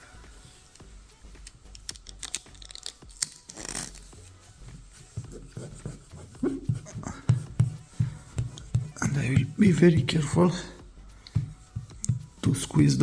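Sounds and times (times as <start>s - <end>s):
small clicks and crinkles: 1.4s - 4.1s
tape tearing and peeling: 1.4s - 4.4s.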